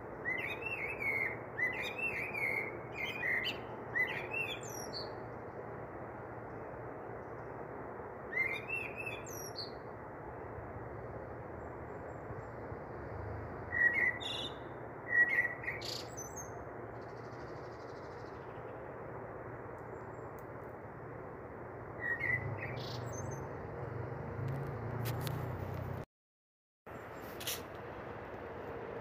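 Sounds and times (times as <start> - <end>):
small bird chirping: 22.0 - 23.5.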